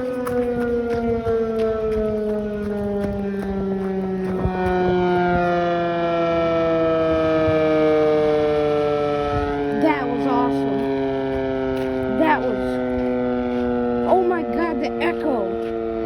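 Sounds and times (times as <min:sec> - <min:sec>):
civil defense siren winding down: 0:00.0 - 0:16.0.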